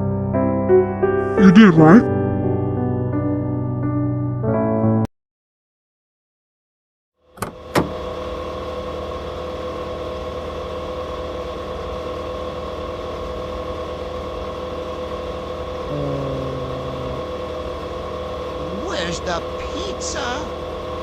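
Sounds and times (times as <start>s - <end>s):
mechanical hum with tones: 7.2s - 21.0s.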